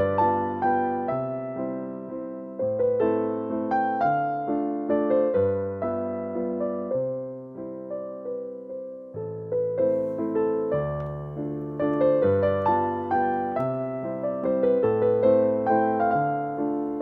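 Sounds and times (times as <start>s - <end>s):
gentle piano piece: 0.0s - 17.0s.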